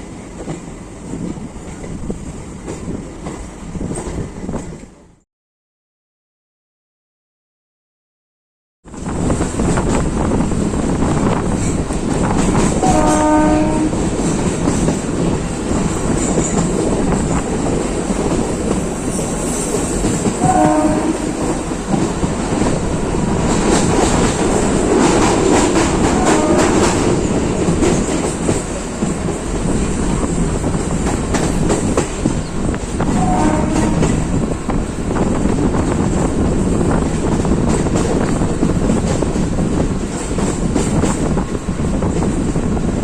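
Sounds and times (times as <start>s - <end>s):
electric train rumbling: 0.0s - 5.2s, 8.9s - 43.0s
rail clatter: 9.0s - 43.0s
train horn blast: 12.8s - 14.0s, 20.4s - 21.6s, 26.1s - 27.1s, 33.1s - 34.4s.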